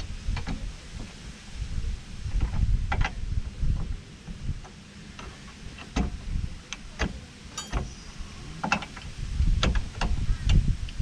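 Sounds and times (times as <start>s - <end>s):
wind rumble on microphone: 0.0s - 11.0s
hand tools clicking and knocking: 7.6s - 7.9s.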